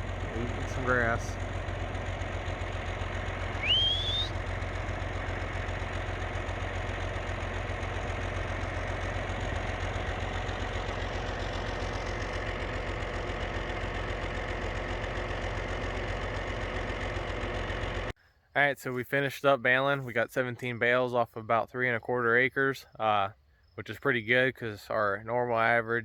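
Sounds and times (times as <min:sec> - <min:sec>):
tractor engine idling: 0:00.0 - 0:18.2
loud rising whistle: 0:03.5 - 0:04.4.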